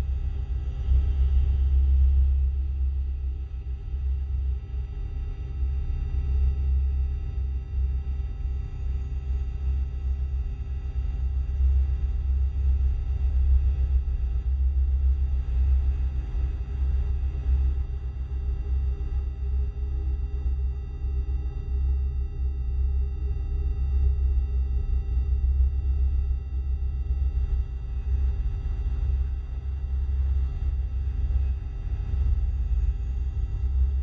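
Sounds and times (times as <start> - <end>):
deep hovering hum: 0.0 - 34.0.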